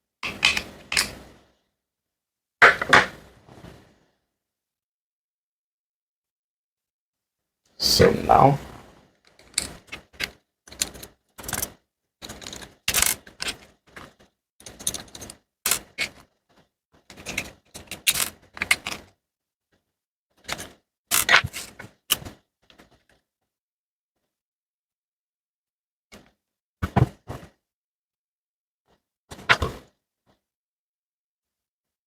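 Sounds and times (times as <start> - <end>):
small hard parts clicking and tapping: 9.2 - 16.3, 17.1 - 19.2, 20.4 - 23.2.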